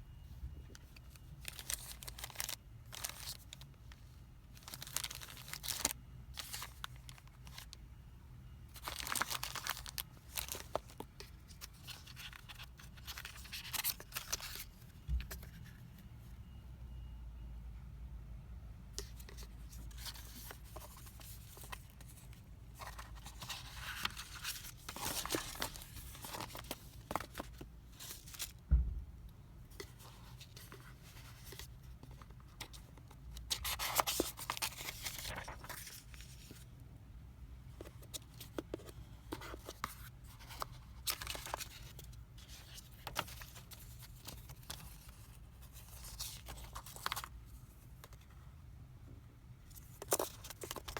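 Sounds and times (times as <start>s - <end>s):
low thump: 28.7s - 29.2s.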